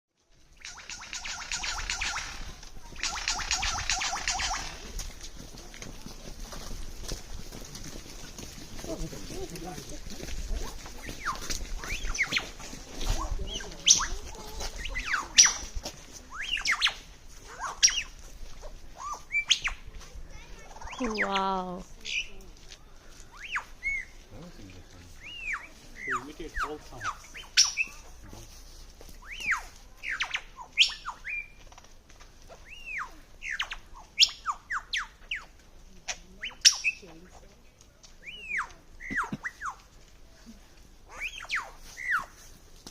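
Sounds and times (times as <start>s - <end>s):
lyrebird singing: 0.5s - 4.9s, 10.2s - 19.9s, 20.7s - 22.5s, 23.3s - 28.6s, 29.2s - 31.6s, 32.5s - 37.6s, 38.2s - 40.0s, 41.0s - 42.5s
bird singing whistles: 23.4s - 24.1s, 25.2s - 28.0s, 29.2s - 31.6s, 32.6s - 35.5s, 41.1s - 42.4s.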